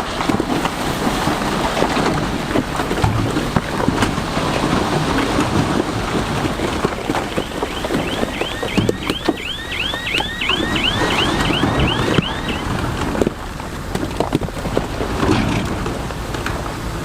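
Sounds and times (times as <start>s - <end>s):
bulldozer engine and tracks: 0.0s - 17.0s
rhythmic high squealing: 7.2s - 13.0s.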